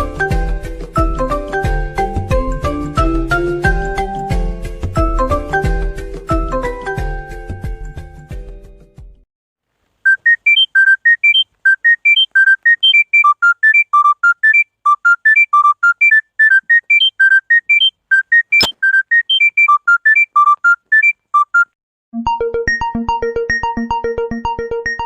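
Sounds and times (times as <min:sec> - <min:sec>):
smartphone ringtone melody: 0:10.1 - 0:21.8
sharp click: 0:18.5 - 0:19.5.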